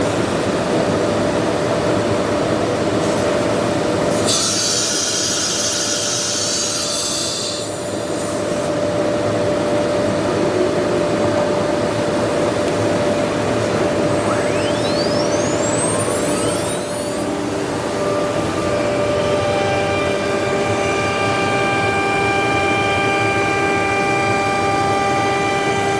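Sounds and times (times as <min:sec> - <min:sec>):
router machine whining: 0:12.6 - 0:25.9.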